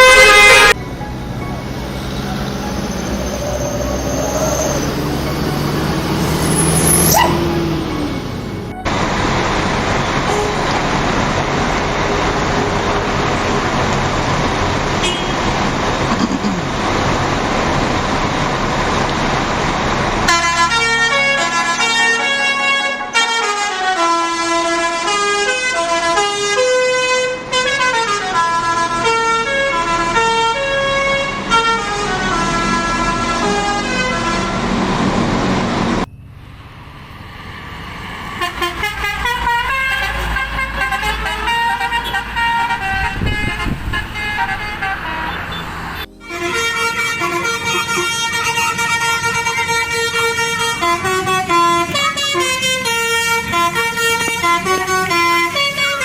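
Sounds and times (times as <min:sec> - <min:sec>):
multi-tone air horn playing tunes: 0:00.0 - 0:00.8, 0:15.0 - 0:15.4, 0:20.3 - 0:34.9, 0:38.4 - 0:56.0.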